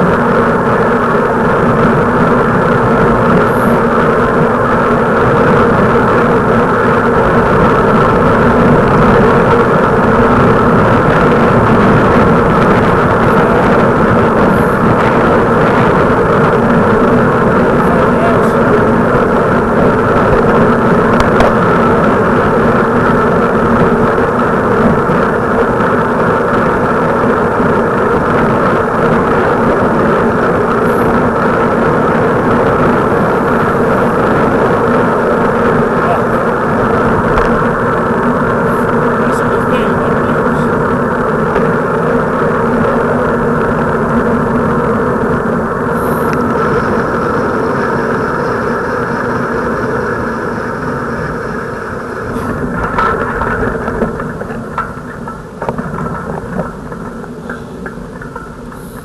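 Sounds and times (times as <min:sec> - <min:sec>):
vehicle mechanical drone: 0:00.0 - 0:59.0.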